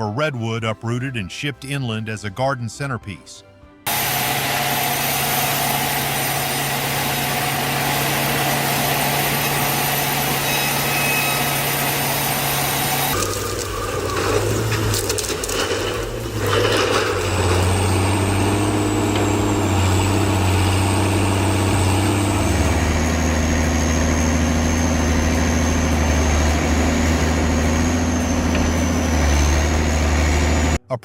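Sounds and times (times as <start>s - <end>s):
engine humming: 3.8s - 30.8s
knocks and clatter: 13.2s - 20.0s.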